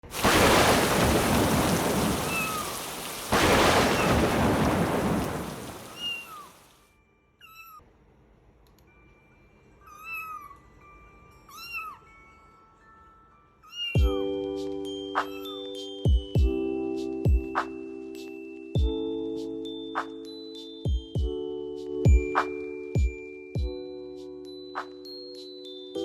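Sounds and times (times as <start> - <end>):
heavy rain: 0.0 - 6.6
thunderclap: 0.0 - 6.6.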